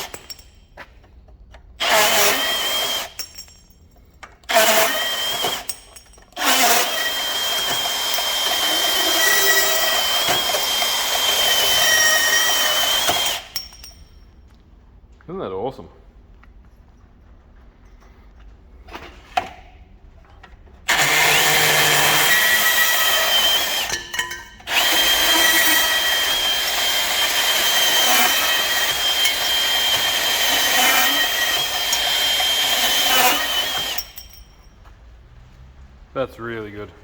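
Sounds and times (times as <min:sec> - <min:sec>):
band saw cutting metal: 0:01.8 - 0:03.2, 0:04.5 - 0:05.8, 0:06.4 - 0:13.6, 0:20.9 - 0:34.4.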